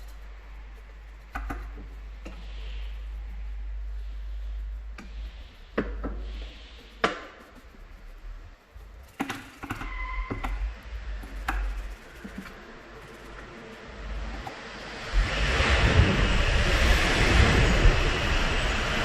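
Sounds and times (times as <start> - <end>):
tools knocking and clicking: 0.8 - 2.4, 8.8 - 12.6
low rumble: 1.9 - 7.0, 10.6 - 19.0
two-tone squeak: 9.6 - 10.7.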